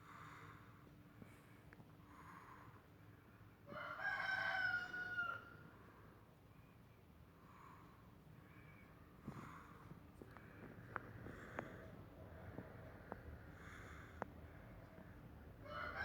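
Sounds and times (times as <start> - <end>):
rooster crowing: 3.7 - 5.6, 15.6 - 16.0.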